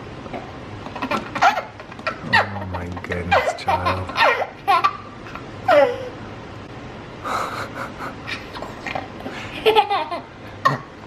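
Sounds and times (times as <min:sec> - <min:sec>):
toddler laughing: 0:01.0 - 0:05.1.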